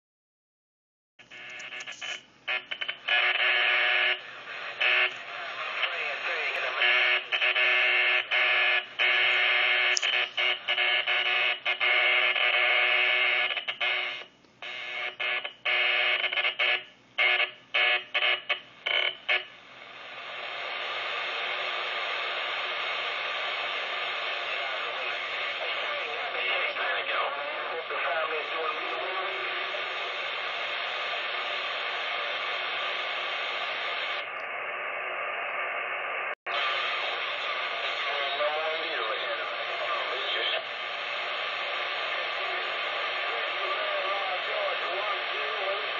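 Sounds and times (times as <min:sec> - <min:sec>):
radio clicking: 0:01.2 - 0:03.4, 0:04.2 - 0:07.6, 0:08.2 - 0:12.5, 0:20.2 - 0:35.6, 0:36.5 - 0:45.9
radio buzzing interference tone: 0:01.2 - 0:45.9.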